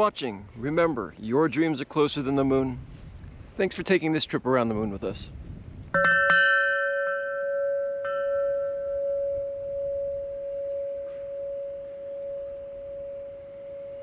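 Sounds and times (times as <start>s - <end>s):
bell-like chime ringing: 6.0s - 14.0s.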